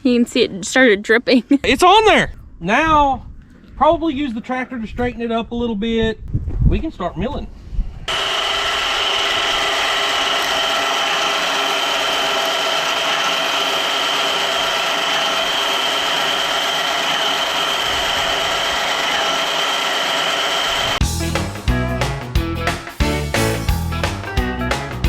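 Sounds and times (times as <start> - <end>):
bandsaw cutting log: 8.1 - 21.0
high whine: 8.1 - 21.1
engine running: 8.1 - 21.2.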